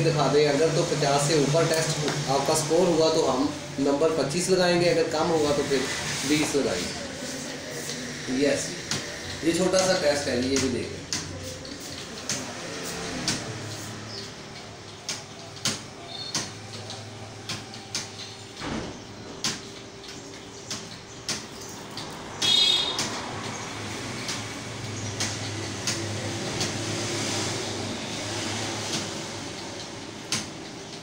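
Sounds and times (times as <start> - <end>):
fan hum: 0.0 - 31.0
computer keys and mouse clicking: 8.9 - 18.6, 19.4 - 26.9, 28.8 - 31.0.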